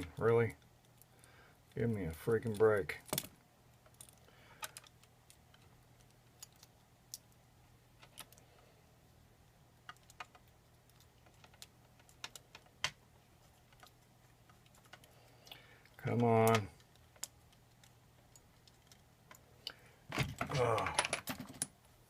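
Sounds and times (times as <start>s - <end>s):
metal tools clicking on lock parts: 20.2s - 21.7s.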